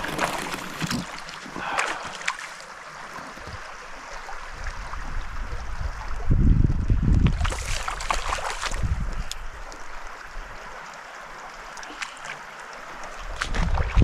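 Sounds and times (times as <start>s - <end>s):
stream rushing over riffle: 7.3s - 14.0s.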